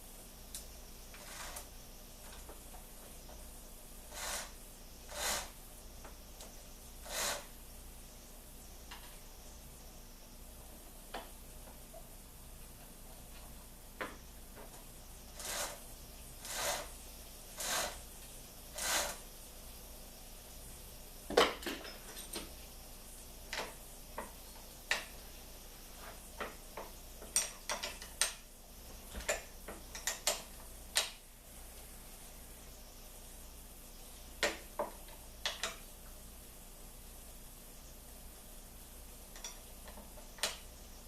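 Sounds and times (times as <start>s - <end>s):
metal parts clinking and clanking: 21.4s - 22.5s.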